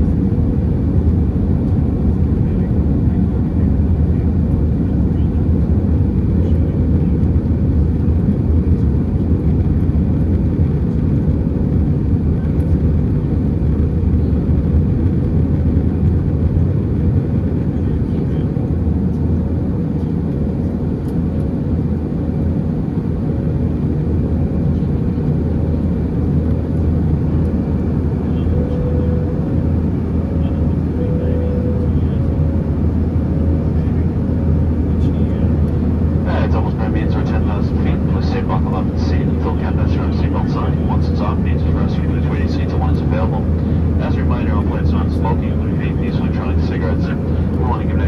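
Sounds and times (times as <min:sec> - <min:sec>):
airplane cabin engine rumble: 0:00.0 - 0:48.0
steady hum: 0:25.5 - 0:48.0.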